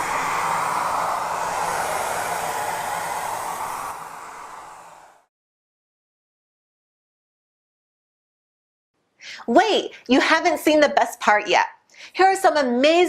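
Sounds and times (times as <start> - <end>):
vacuum cleaner running: 0.0 - 5.3.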